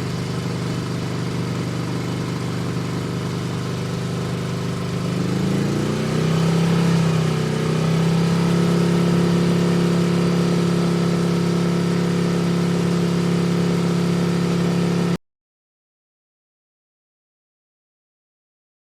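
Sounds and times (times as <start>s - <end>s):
motorcycle engine running: 0.0s - 15.2s.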